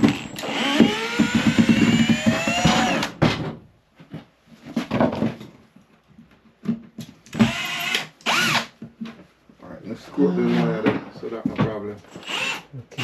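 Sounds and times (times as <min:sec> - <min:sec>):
power tool motor whirring: 0:00.0 - 0:03.1, 0:07.4 - 0:08.7, 0:12.1 - 0:13.0.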